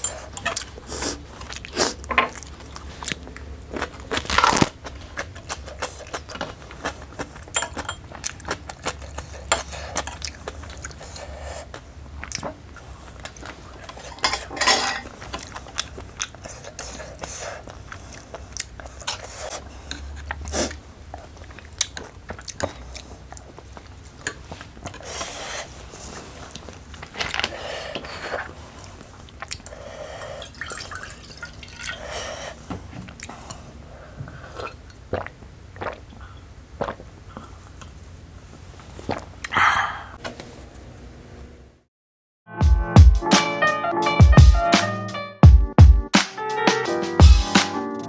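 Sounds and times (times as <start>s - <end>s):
chewing with wet clicks: 0.0s - 14.2s, 15.2s - 25.2s, 28.0s - 32.0s, 34.6s - 38.0s.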